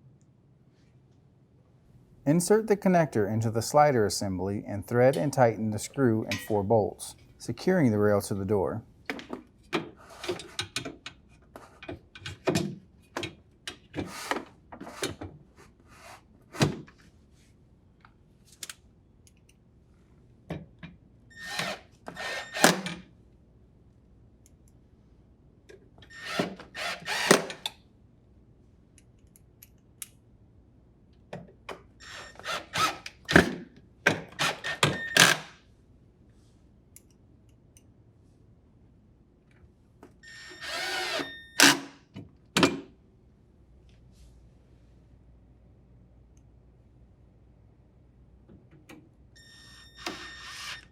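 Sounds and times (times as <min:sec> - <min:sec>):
drill driver running: 0:21.4 - 0:22.8, 0:26.2 - 0:27.6, 0:34.4 - 0:35.5, 0:40.4 - 0:41.9, 0:50.0 - 0:50.9.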